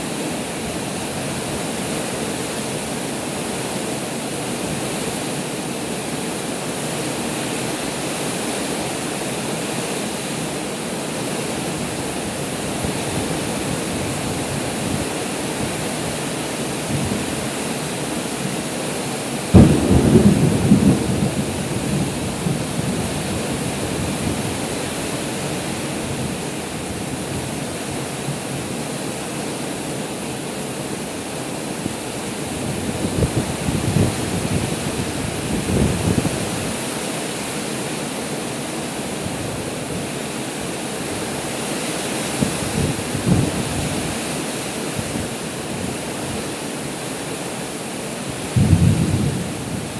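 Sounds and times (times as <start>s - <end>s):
heavy rain falling: 0.0s - 49.9s
thunder clap rumbling: 19.5s - 23.3s, 48.5s - 49.9s.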